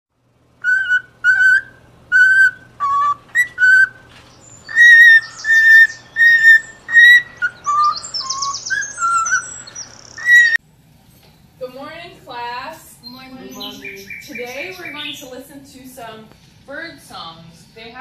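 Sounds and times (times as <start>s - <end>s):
rasping bird chirps: 0.6s - 10.6s, 13.4s - 15.4s.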